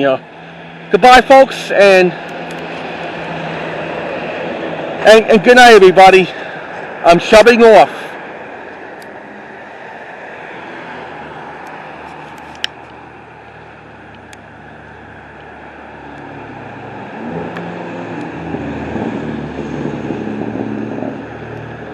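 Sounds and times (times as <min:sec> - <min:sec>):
vehicle engine approaching: 0:00.0 - 0:07.3, 0:08.0 - 0:21.9
street traffic noise: 0:00.0 - 0:21.9.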